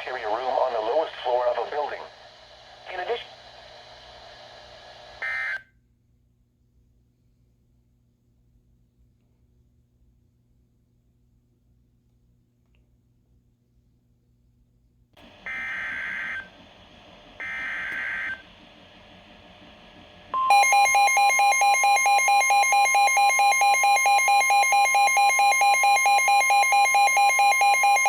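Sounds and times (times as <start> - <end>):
loud steady attention tone: 1.3 - 5.6, 15.2 - 28.0.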